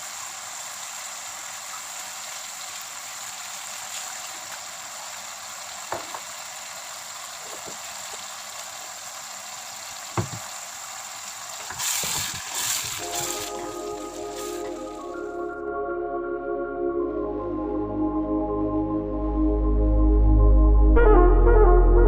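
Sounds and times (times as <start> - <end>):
paste sizzling in hot oil: 0.0 - 15.4.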